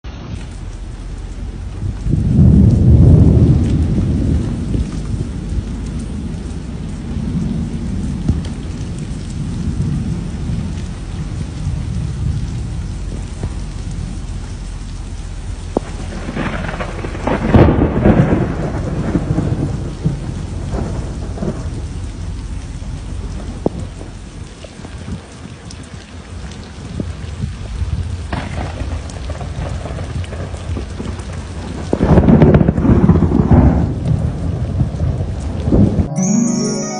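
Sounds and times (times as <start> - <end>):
rain falling steadily: 0.0 - 36.9
low rumbling thunder: 0.3 - 25.9, 26.6 - 36.1
thunder crashes: 1.5 - 14.2, 15.7 - 24.1, 28.3 - 36.1.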